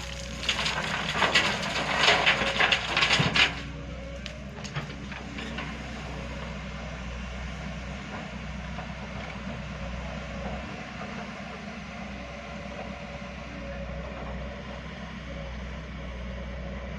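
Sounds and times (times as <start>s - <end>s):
rocks clattering and crunching: 0.0s - 5.0s
diesel engine hum: 0.0s - 16.9s.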